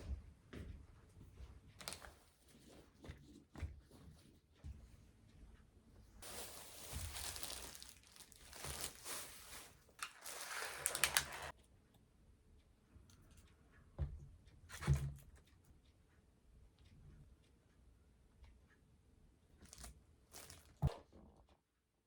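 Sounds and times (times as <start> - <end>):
packaging crinkling: 6.2 - 11.5, 19.8 - 20.8.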